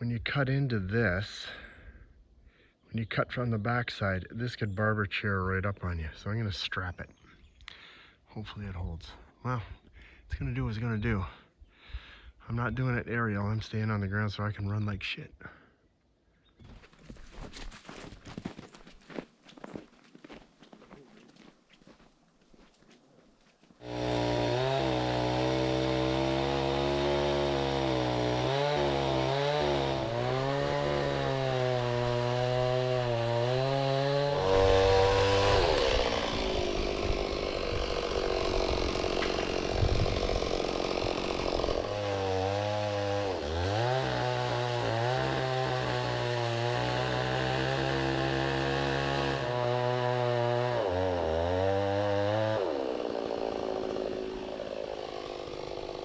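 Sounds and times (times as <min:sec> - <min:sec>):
chainsaw cutting wood: 0:23.8 - 0:56.0.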